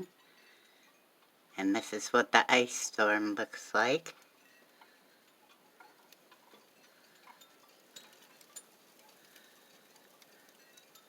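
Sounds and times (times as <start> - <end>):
ice storm ticking and clicking: 4.1 - 11.0.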